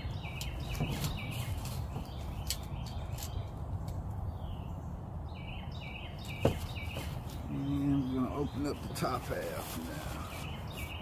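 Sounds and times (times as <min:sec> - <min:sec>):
bird chirping: 0:00.0 - 0:11.0.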